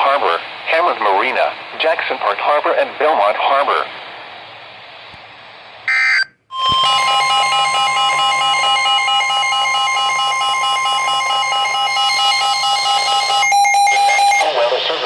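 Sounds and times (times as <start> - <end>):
digital data tones: 5.9 - 14.5
rapid alarm beeping: 5.9 - 14.5
steady alert alarm tone: 5.9 - 14.5.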